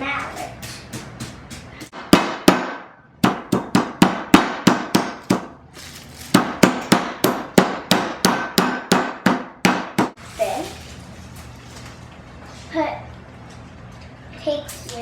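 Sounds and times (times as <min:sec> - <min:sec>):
meat mallet pounding chicken: 0:00.6 - 0:05.6, 0:06.3 - 0:10.2.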